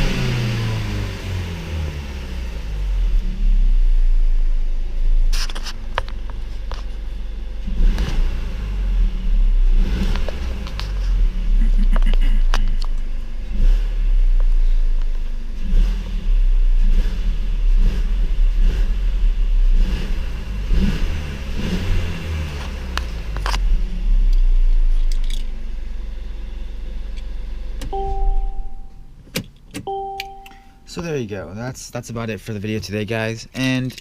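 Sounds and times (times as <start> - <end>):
car engine revving and idling: 0.0 - 33.1
two-tone electronic chime: 27.9 - 29.1, 29.9 - 30.9.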